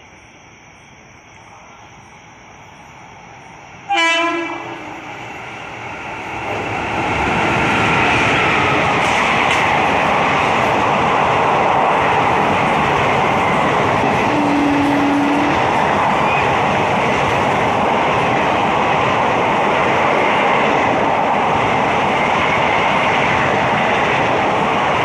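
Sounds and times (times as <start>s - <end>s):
train wheels on rails: 2.8s - 25.0s
locomotive horn: 3.9s - 5.1s, 14.2s - 15.7s.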